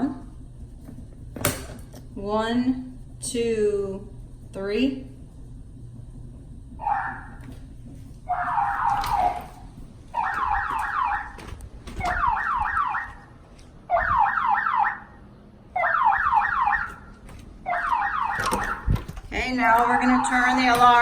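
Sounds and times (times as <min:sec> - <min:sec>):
security alarm falling sweeps: 0:06.8 - 0:07.5, 0:08.2 - 0:21.0.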